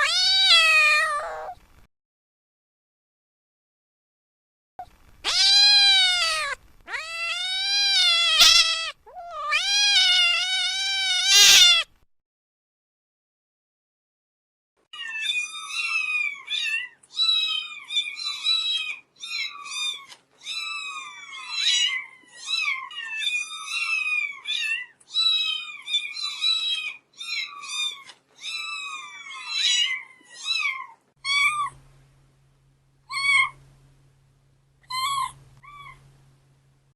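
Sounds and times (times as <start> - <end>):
kitten meowing: 0.0 - 1.6, 5.2 - 11.9, 33.1 - 33.6
steady low hum: 31.6 - 36.9.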